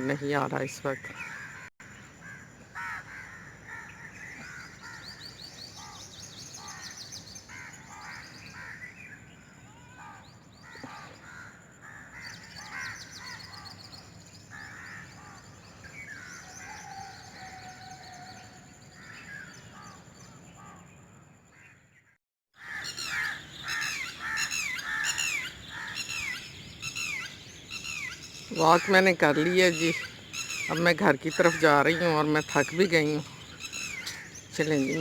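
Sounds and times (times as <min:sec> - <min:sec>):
birds calling: 0:00.0 - 0:20.8, 0:22.6 - 0:35.0.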